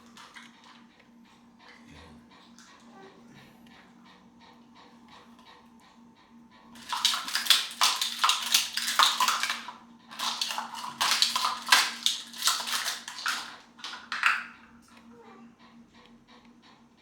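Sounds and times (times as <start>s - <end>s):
hard objects clattering: 6.8s - 14.6s.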